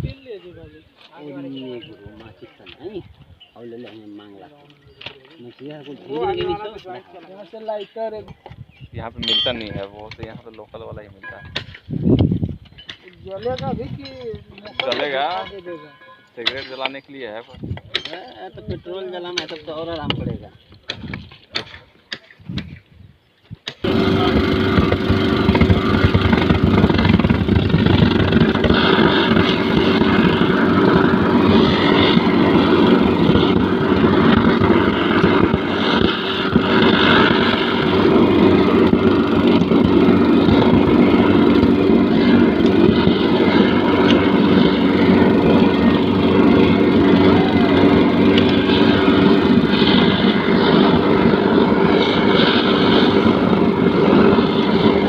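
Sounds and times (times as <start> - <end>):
burner roaring: 23.8 - 55.0
low hum: 23.8 - 55.0.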